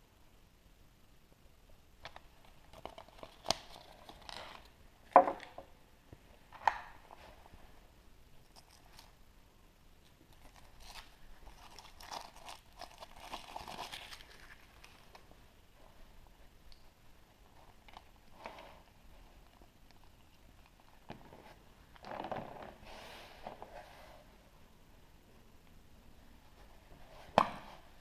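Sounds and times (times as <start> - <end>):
wrapper crinkling: 10.3 - 15.2.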